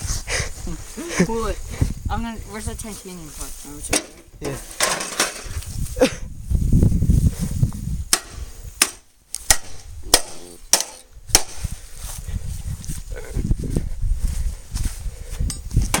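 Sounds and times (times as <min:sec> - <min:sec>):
metal pieces being struck: 0:04.8 - 0:05.5.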